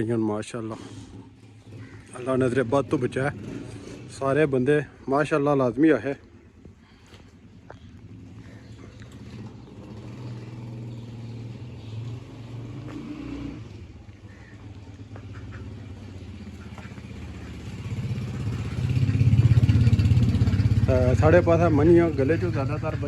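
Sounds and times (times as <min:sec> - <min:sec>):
engine running with low throb: 0:06.0 - 0:23.0.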